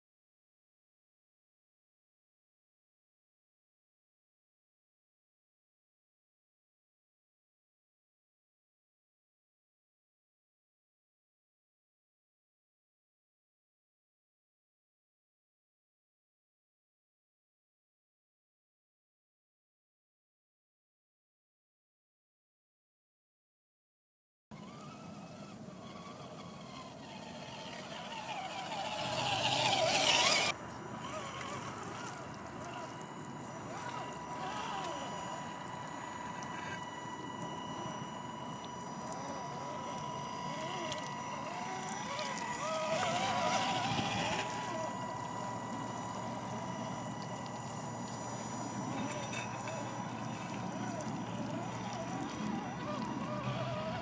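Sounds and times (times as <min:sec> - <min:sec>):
toy car motor and gears whining: 0:24.5 - 0:54.0
water splashing and trickling: 0:31.2 - 0:53.9.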